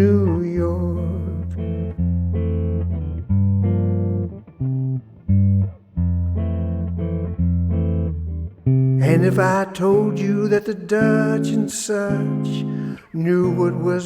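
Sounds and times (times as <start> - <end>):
instrumental music with bass line: 0.0 - 9.5.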